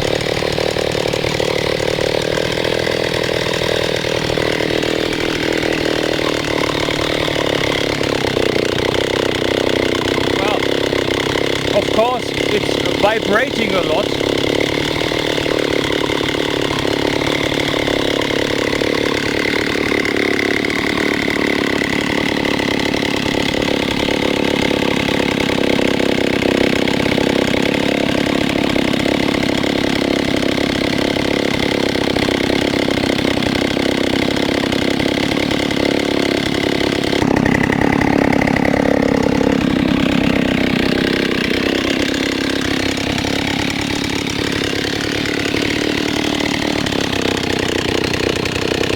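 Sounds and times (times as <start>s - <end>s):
chainsaw engine running: 0.0s - 48.9s.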